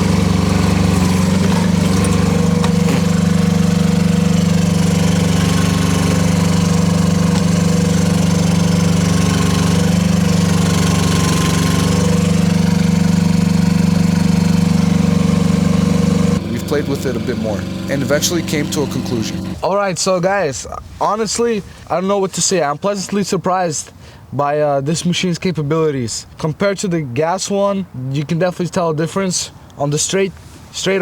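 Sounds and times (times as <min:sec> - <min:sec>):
diesel engine running: 0:00.0 - 0:19.6.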